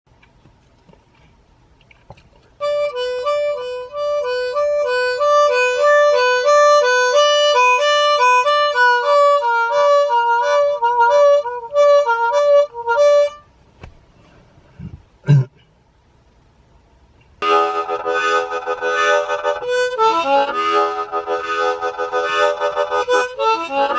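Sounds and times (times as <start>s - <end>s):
harmonica imitating a siren: 2.6s - 13.4s, 17.4s - 23.9s.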